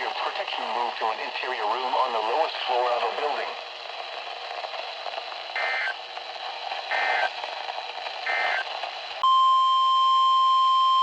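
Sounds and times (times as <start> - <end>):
radio hiss: 0.0 - 9.2
steady warning alarm tone: 5.6 - 5.9.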